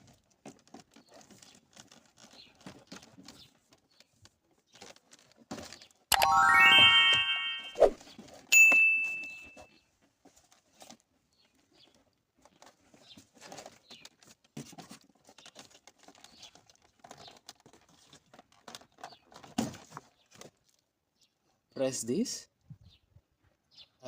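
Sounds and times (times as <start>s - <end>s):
electronic chime ding: 6.1s - 7.9s, 8.6s - 9.5s.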